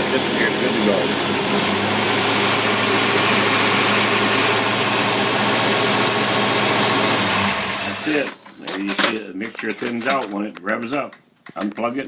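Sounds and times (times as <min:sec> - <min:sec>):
engine running with low hum: 0:00.0 - 0:07.9
hiss: 0:07.3 - 0:08.2.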